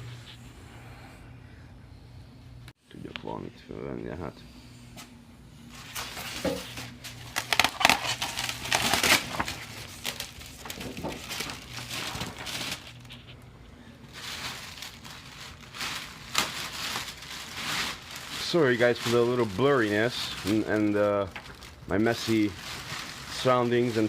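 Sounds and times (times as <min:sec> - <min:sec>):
packaging crinkling and rustling: 0:05.7 - 0:24.0.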